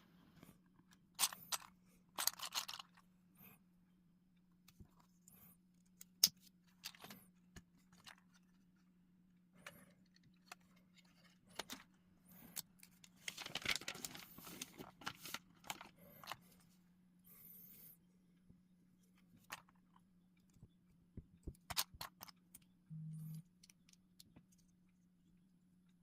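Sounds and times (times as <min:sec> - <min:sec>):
plastic pieces rattling: 0:01.2 - 0:03.0, 0:13.2 - 0:15.9.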